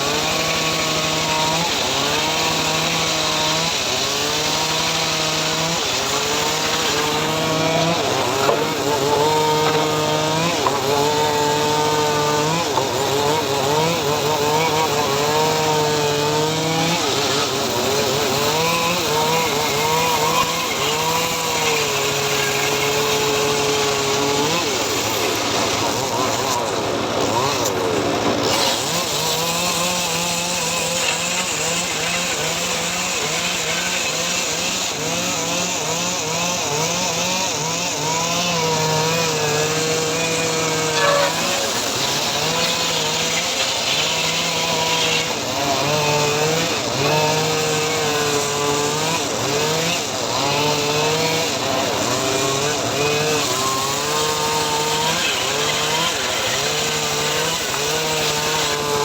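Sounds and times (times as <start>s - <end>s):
engine-driven saw cutting wood: 0.0s - 59.0s.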